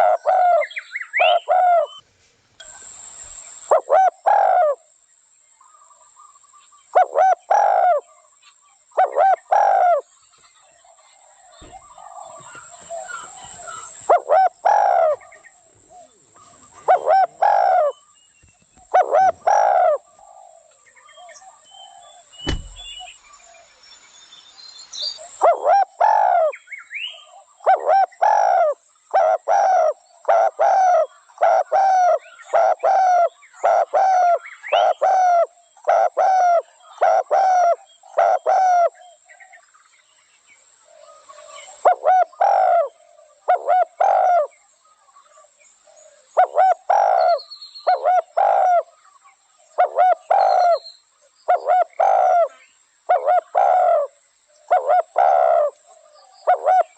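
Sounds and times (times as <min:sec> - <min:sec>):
dove cooing: 0:00.0 - 0:02.0, 0:03.6 - 0:04.8, 0:06.9 - 0:08.2, 0:09.0 - 0:10.1, 0:11.5 - 0:18.0, 0:18.8 - 0:23.0, 0:25.4 - 0:26.6, 0:27.3 - 0:39.6, 0:40.9 - 0:44.6, 0:45.9 - 0:49.0, 0:49.8 - 0:50.8, 0:51.5 - 0:56.9
sharp click: 0:22.4 - 0:23.1.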